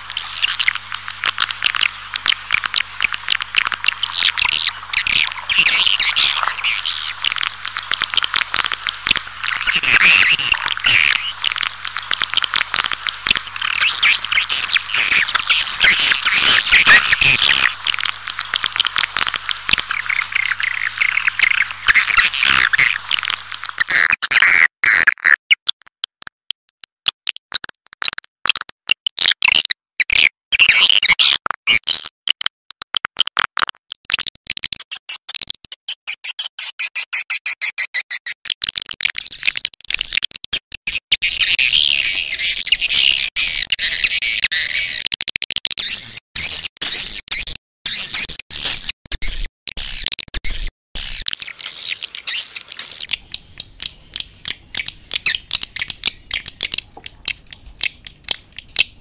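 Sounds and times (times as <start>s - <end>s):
low steady hum: 0.0s - 23.9s
swiftlets twittering high chirps: 0.0s - 24.0s, 41.2s - 44.8s, 51.0s - 59.0s.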